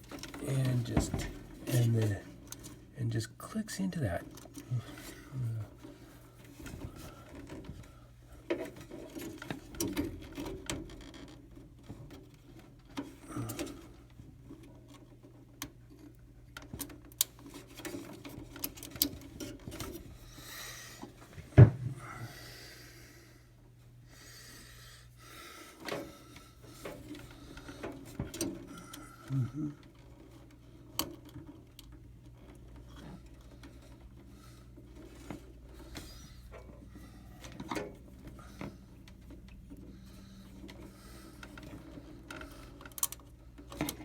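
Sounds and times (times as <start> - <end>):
low steady hum: 19.8 - 44.0
hands clicking and tapping parts: 29.8 - 44.0.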